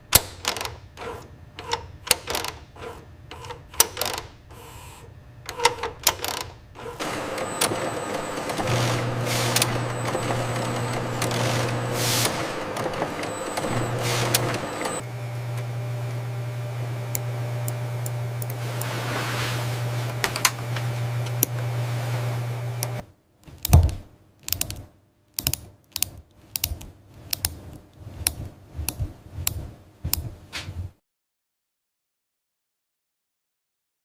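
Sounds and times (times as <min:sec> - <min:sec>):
machine hum: 0:06.7 - 0:23.0
mechanical clicks and taps: 0:17.1 - 0:18.6, 0:22.8 - 0:30.3.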